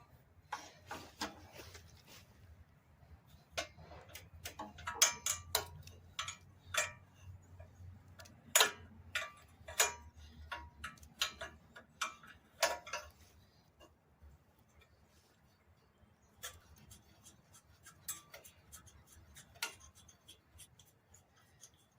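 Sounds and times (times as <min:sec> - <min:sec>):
wrench clinking on metal: 0:03.5 - 0:13.2.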